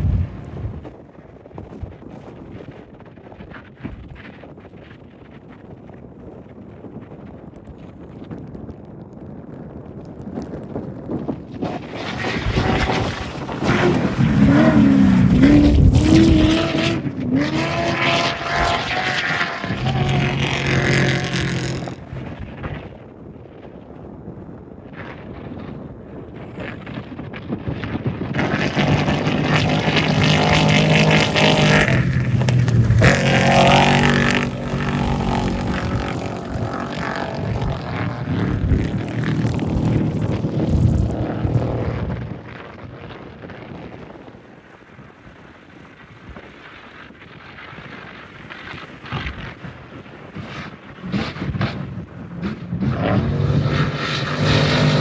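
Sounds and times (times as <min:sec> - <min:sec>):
race vehicle engine passing: 0:11.6 - 0:22.3, 0:28.4 - 0:42.2, 0:51.1 - 0:55.0.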